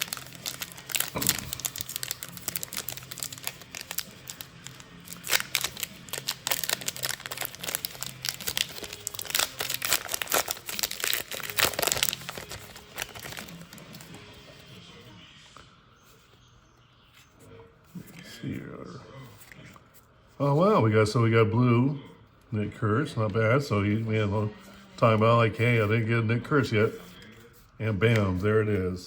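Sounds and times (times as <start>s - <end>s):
plastic and foil packaging crinkling: 0.0s - 14.6s
trading cards being handled: 0.0s - 14.8s, 23.9s - 29.0s.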